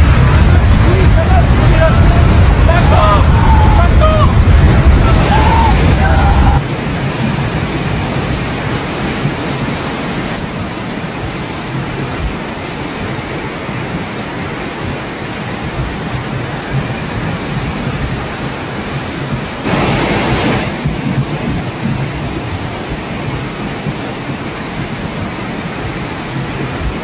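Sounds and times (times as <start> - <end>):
floodwater rushing: 0.0 - 27.0.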